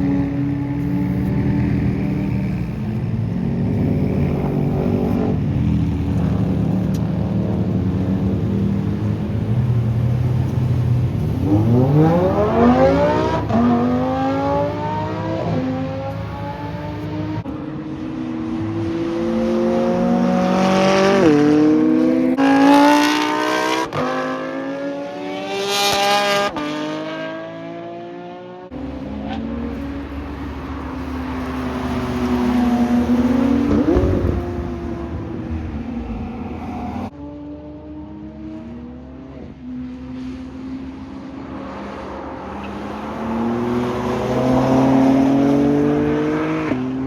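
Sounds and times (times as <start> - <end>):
car engine accelerating: 0.0 - 39.0.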